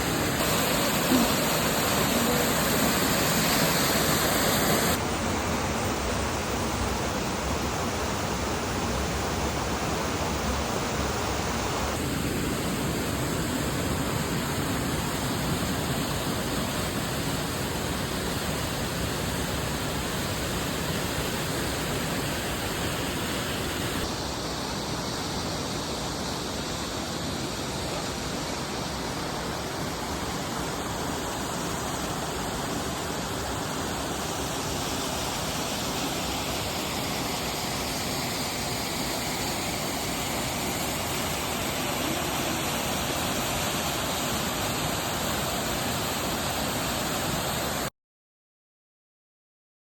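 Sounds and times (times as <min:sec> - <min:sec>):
waterfall rushing: 0:00.0 - 0:12.1, 0:32.9 - 0:47.9.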